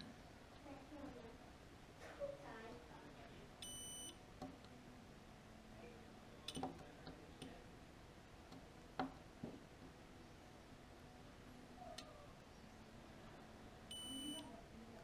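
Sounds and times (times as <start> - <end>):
multimeter continuity beep: 3.6 - 4.2, 13.9 - 14.5.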